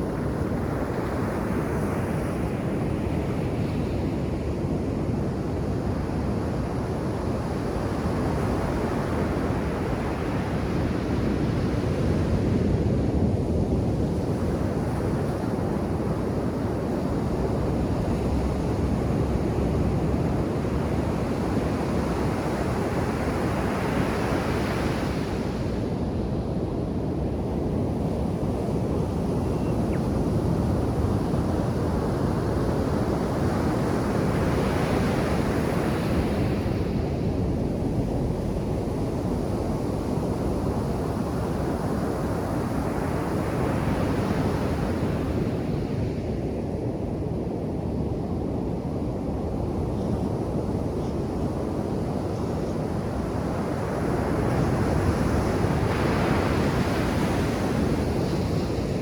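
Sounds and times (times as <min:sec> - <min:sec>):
waves rumbling: 0:30.8 - 0:43.8.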